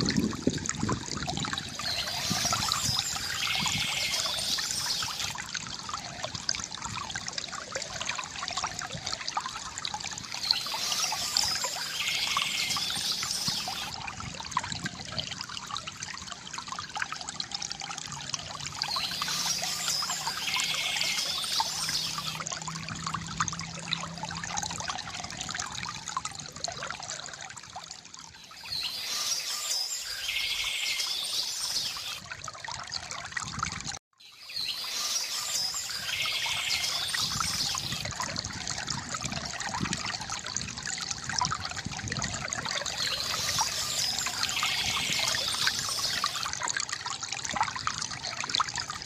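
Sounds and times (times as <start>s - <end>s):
stream trickling and splashing: 0.0s - 49.0s
songbird singing: 1.6s - 5.3s, 10.2s - 13.9s, 18.7s - 22.4s, 28.4s - 32.2s, 34.2s - 38.1s, 42.8s - 46.5s.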